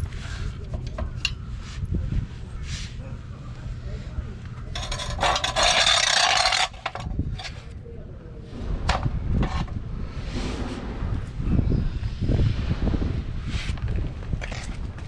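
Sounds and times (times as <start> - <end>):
harsh scraping rub: 4.7 - 7.7.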